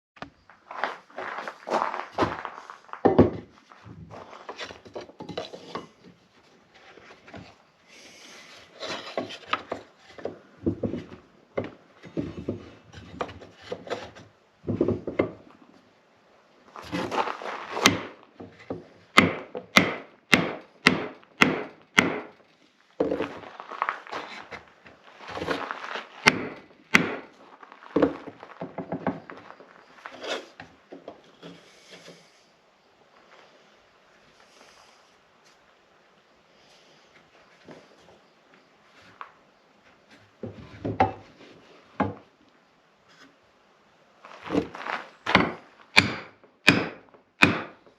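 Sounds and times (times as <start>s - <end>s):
hand tool rasping wood: 6.8s - 11.2s, 16.8s - 22.3s, 25.3s - 27.3s, 44.5s - 47.8s
sharp knocks on wood: 19.2s - 22.3s, 26.2s - 27.3s, 45.3s - 47.8s.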